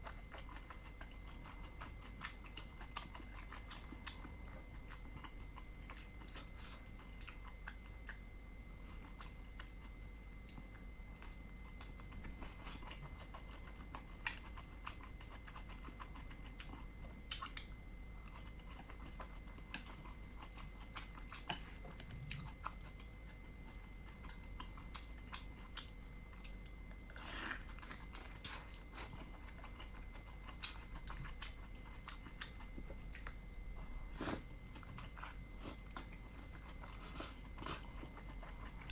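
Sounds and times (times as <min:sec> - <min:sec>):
chewing and biting food: 0:00.0 - 0:38.9.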